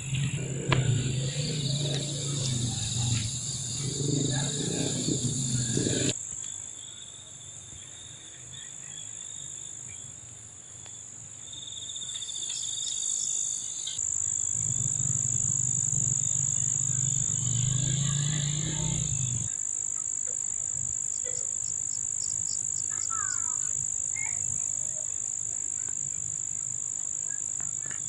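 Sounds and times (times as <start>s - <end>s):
low drone: 0.0s - 6.2s, 14.3s - 19.5s
pulsing insect call: 0.0s - 28.0s.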